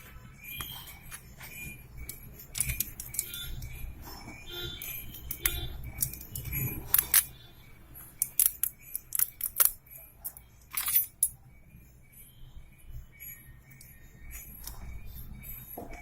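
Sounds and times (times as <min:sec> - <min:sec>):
small hard objects clicking: 0:02.0 - 0:03.8, 0:08.2 - 0:11.3.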